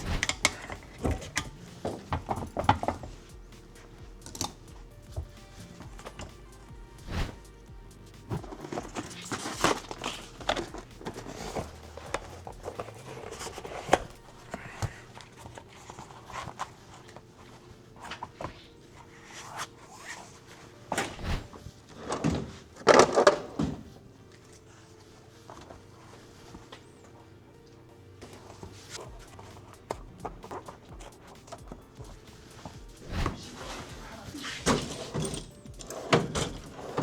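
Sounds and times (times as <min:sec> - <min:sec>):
workshop knocks clicks and rubbing: 0:00.0 - 0:17.2, 0:28.2 - 0:37.0
faint background music: 0:00.0 - 0:37.0.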